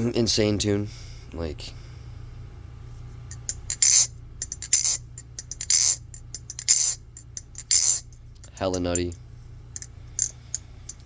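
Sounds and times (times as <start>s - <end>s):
butterfly knife clatter: 3.3s - 9.2s, 9.8s - 11.0s.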